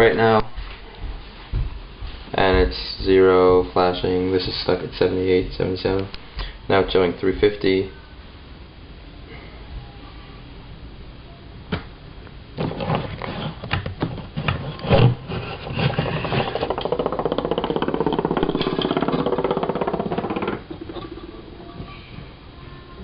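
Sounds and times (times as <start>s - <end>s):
knocks and clatter: 12.6s - 21.9s
fast rubbing or rasping: 14.4s - 21.5s.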